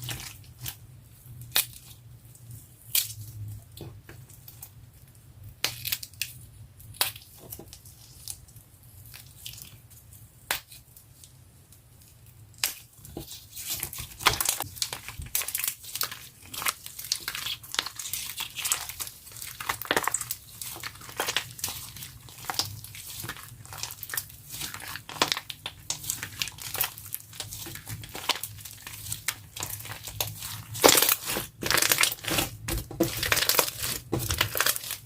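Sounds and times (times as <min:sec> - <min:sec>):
slime crackling and popping: 0:12.6 - 0:35.0.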